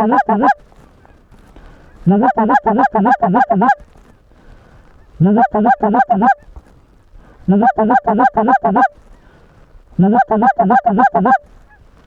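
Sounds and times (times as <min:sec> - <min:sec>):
goose call clucking honks: 0:00.0 - 0:00.6, 0:01.8 - 0:03.9, 0:05.0 - 0:06.6, 0:07.4 - 0:09.0, 0:10.0 - 0:11.8.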